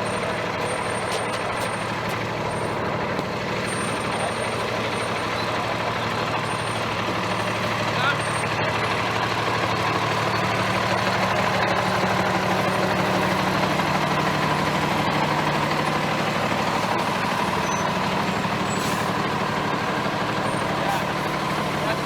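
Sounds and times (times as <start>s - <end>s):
truck engine idling: 0.0s - 22.0s.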